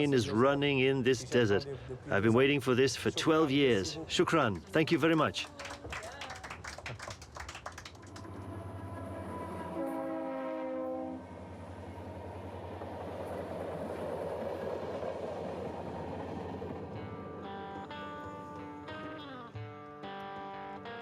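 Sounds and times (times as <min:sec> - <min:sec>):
diesel train rumbling: 0:08.0 - 0:18.9
train horn chord: 0:08.2 - 0:11.4.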